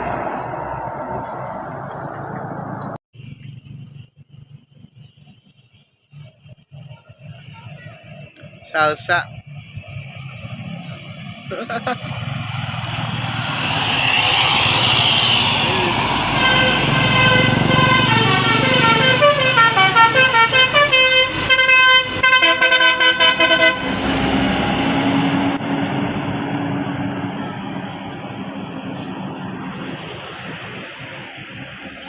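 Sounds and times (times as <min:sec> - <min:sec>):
bus engine: 0:00.0 - 0:32.0
traffic: 0:00.0 - 0:32.0
multi-tone air horn tune: 0:15.8 - 0:24.1.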